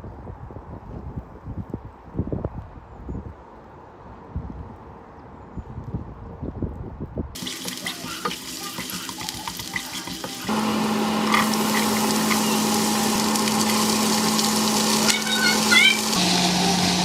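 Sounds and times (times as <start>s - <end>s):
water running into a sink: 7.4s - 17.0s.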